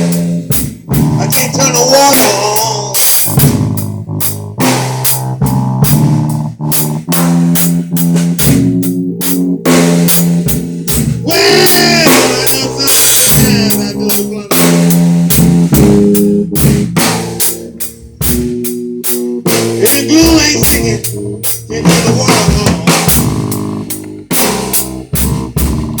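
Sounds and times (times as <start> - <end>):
drum kit beat: 0.0 - 26.0
guitar: 11.2 - 14.7.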